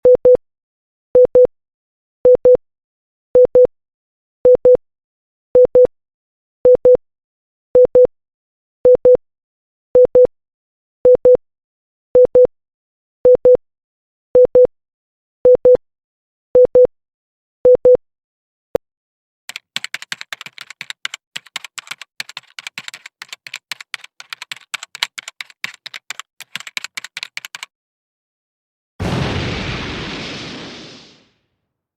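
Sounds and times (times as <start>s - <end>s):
rapid irregular clatter of clicks: 19.5s - 27.7s.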